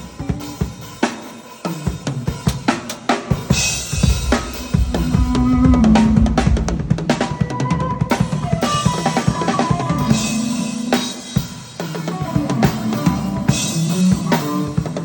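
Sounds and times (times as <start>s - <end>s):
drum kit quick strokes: 3.5s - 7.6s
held low instrument note: 3.9s - 8.1s.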